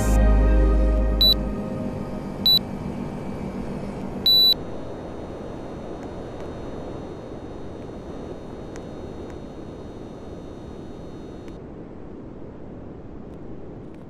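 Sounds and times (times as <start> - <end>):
fan rushing: 0.0 - 11.5
low hum: 0.0 - 11.6
air conditioner beep: 1.2 - 1.4, 2.2 - 11.6.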